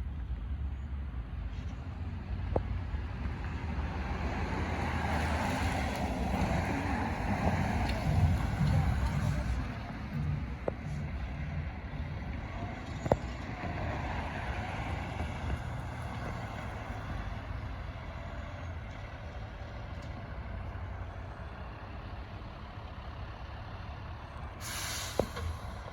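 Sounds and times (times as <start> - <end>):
fire truck engine running: 0.0 - 25.9.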